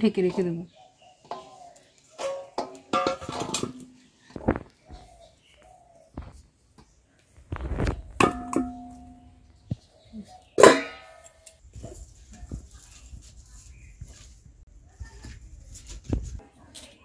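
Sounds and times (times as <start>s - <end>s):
metal kitchen utensils clanking: 1.2s - 4.1s, 10.6s - 11.5s.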